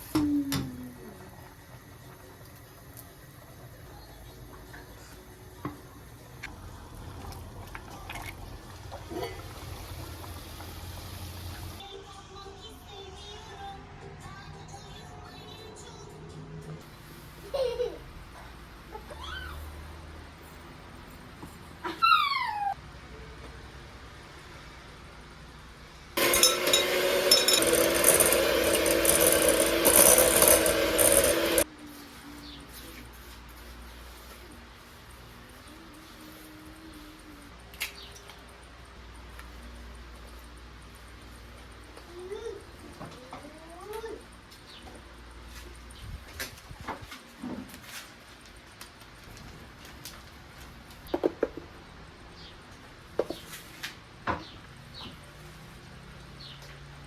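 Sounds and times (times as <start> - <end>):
small electric motor whirring: 26.2 - 31.6.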